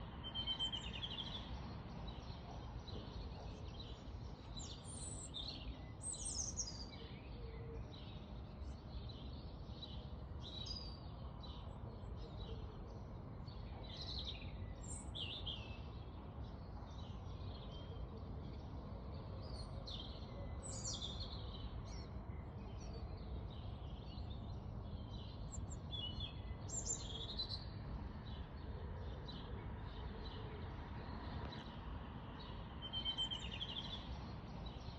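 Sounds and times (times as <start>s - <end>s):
songbirds singing and chirping: 0.0s - 34.9s.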